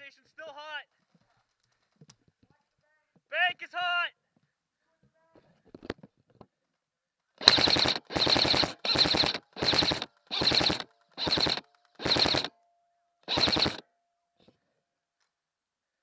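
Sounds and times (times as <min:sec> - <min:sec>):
airsoft gun full-auto bursts: 0:07.4 - 0:12.5, 0:13.3 - 0:13.8.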